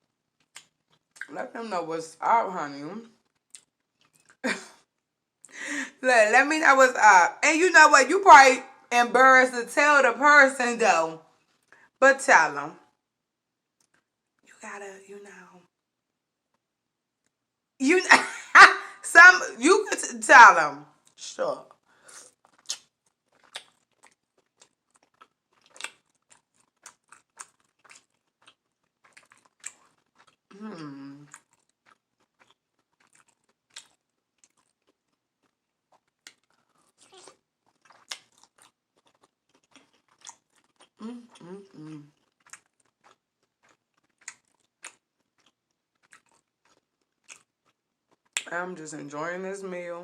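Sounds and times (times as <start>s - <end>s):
close-miked chewing: 0.4s - 1.3s, 3.1s - 4.9s, 21.0s - 48.5s
mouth clicks and small crunches: 0.4s - 1.4s, 3.1s - 5.6s, 13.8s - 14.5s, 21.0s - 48.5s.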